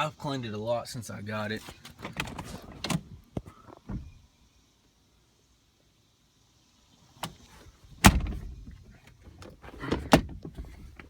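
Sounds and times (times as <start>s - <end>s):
clicks and knocks in car cabin: 8.0s - 11.0s.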